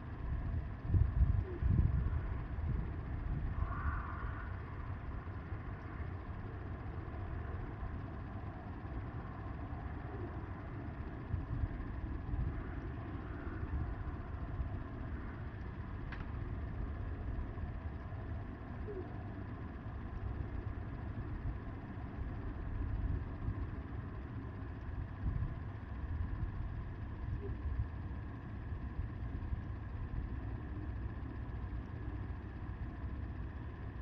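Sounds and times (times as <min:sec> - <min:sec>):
wind buffeting microphone: 0:00.4 - 0:04.6
faint click: 0:16.1 - 0:16.4.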